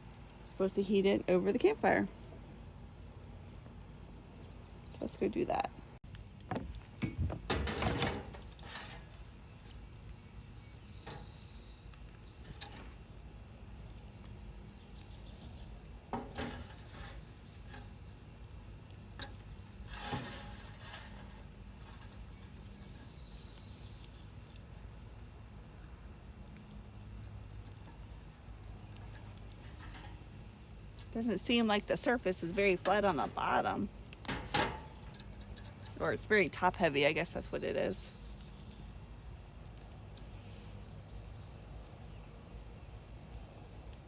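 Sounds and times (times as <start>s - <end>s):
low outdoor background: 0.0s - 44.0s
metal popper clattering and knocking: 6.4s - 9.2s, 16.1s - 17.9s, 32.7s - 36.0s.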